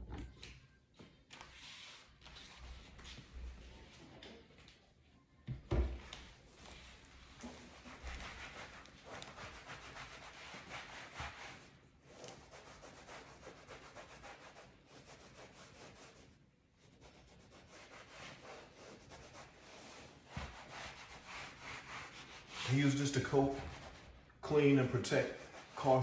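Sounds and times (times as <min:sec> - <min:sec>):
hand rubbing leather: 0:16.9 - 0:26.0.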